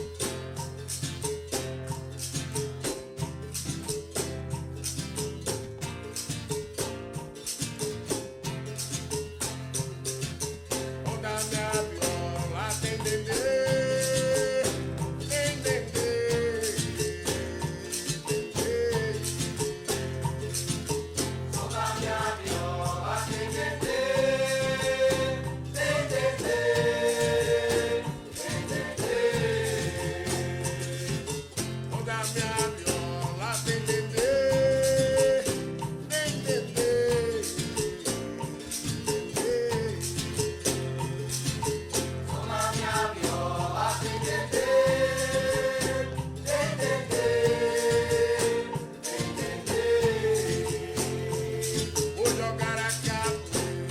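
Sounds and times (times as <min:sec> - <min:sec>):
percussion rhythm with jingles: 0:00.0 - 0:53.9
shaker: 0:00.0 - 0:53.9
voices singing: 0:11.8 - 0:20.4, 0:21.4 - 0:35.8, 0:42.2 - 0:53.9.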